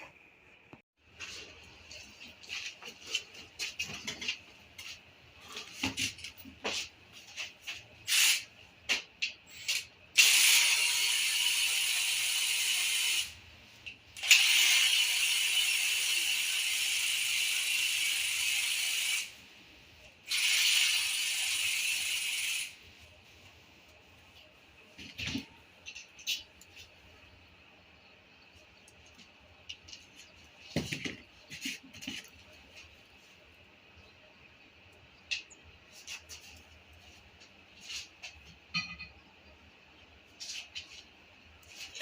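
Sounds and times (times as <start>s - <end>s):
air tool running: 10.2s - 13.4s, 14.2s - 19.4s, 20.3s - 22.8s.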